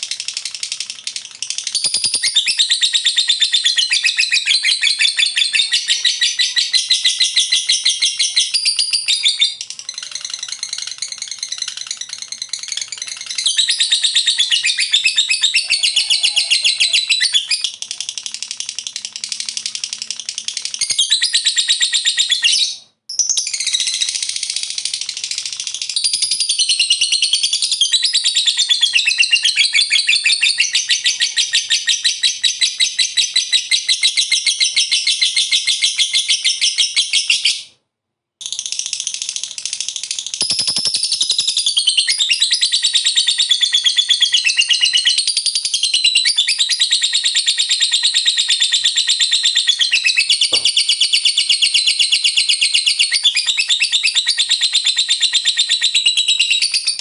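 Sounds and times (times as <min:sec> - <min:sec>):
lovebird chattering trill: 0:00.0 - 0:27.6, 0:40.3 - 0:45.2.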